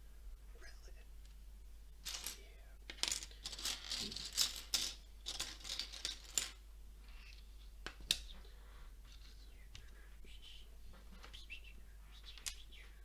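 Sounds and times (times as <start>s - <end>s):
plastic toy bricks clicking and rattling: 3.0s - 6.6s.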